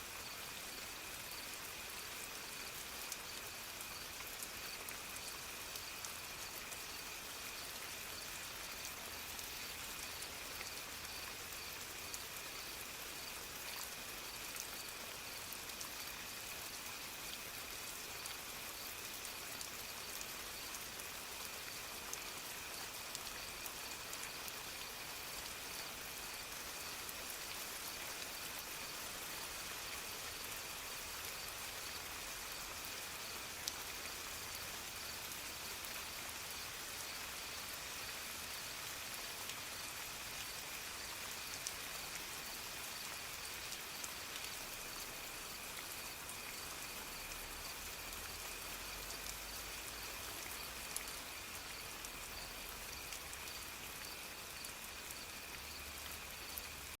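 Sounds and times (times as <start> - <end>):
soft rain falling: 0.0 - 57.0.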